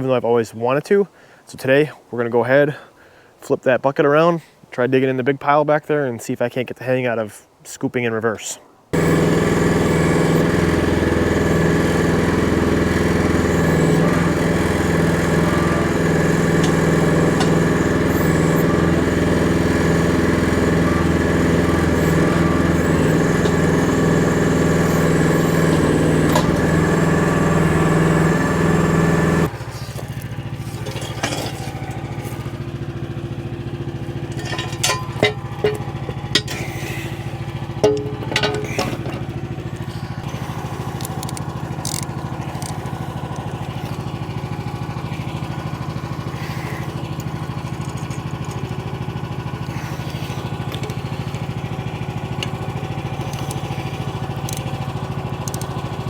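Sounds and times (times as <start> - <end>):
mini excavator engine running: 8.9 - 56.0
metallic clanks and knocks: 30.6 - 32.4, 34.2 - 36.7, 37.8 - 39.3.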